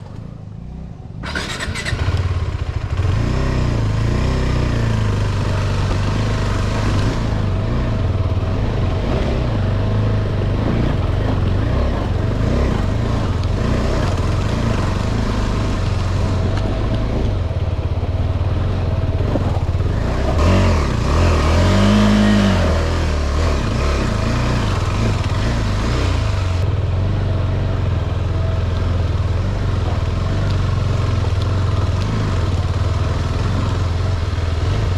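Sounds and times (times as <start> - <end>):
motorcycle engine running and revving: 0.0 - 34.9.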